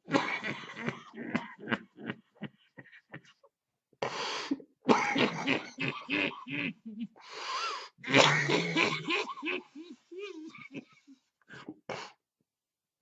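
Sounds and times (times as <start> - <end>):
man coughing: 4.9 - 6.7.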